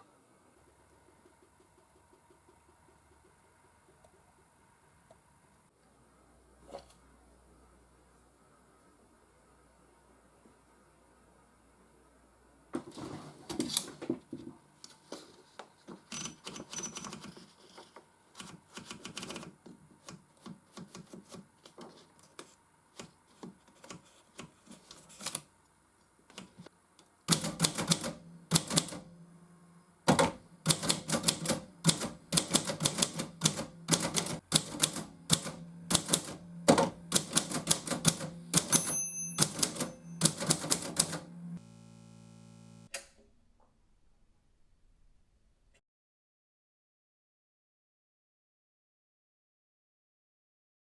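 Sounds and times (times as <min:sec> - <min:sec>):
manual typewriter typing: 0:16.1 - 0:17.5, 0:18.4 - 0:21.4, 0:27.3 - 0:29.1, 0:30.1 - 0:41.3.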